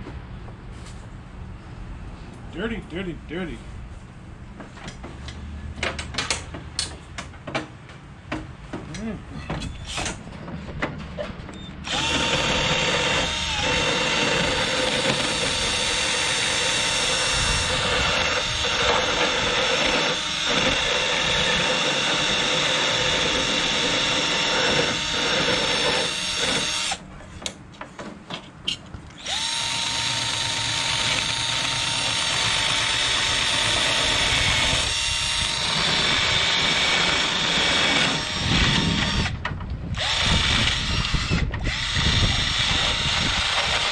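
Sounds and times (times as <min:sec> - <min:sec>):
power drill running: 0:11.8 - 0:27.0, 0:29.2 - 0:39.3, 0:40.0 - 0:43.9.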